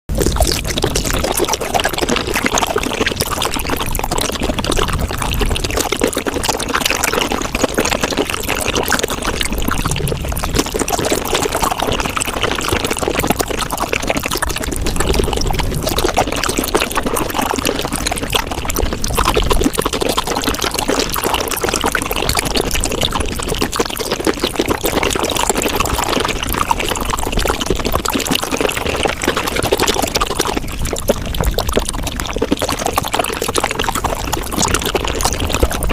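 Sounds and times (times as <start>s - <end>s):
wet chewing and slurping: 0.1s - 35.9s.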